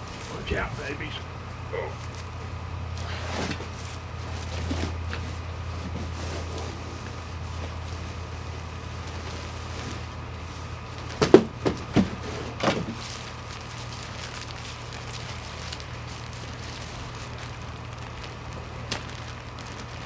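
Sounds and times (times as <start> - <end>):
low hum: 0.0 - 4.4.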